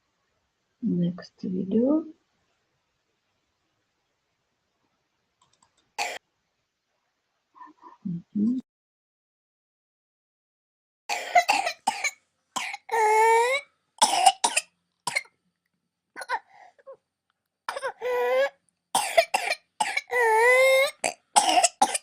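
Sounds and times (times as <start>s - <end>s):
child coughing rapidly: 11.1s - 15.3s, 17.7s - 22.0s.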